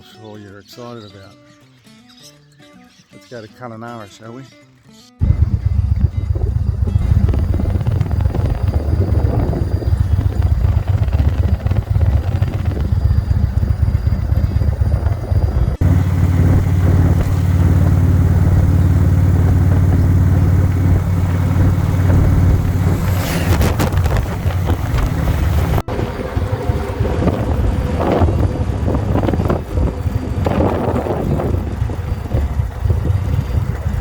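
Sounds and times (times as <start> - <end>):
motorcycle engine cruising: 5.2 - 34.0
wind noise: 5.2 - 34.0
short high falling sweep: 15.8 - 27.0.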